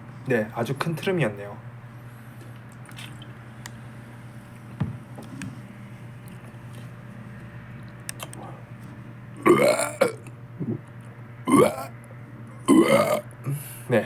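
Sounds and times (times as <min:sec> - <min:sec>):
low steady hum: 0:00.0 - 0:14.0
person burping loudly: 0:09.4 - 0:10.8, 0:11.5 - 0:11.9, 0:12.6 - 0:13.3.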